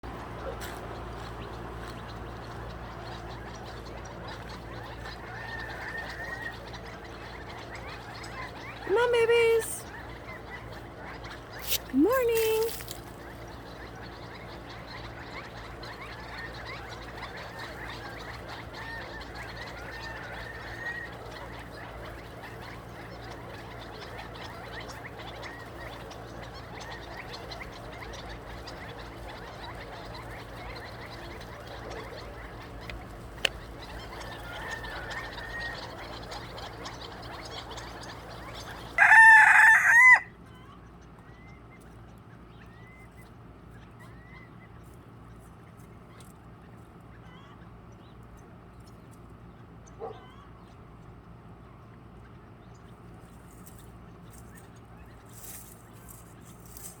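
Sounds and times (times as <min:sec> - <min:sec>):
chickens clucking softly: 0:00.0 - 0:57.0
rooster crowing loudly: 0:39.0 - 0:40.3.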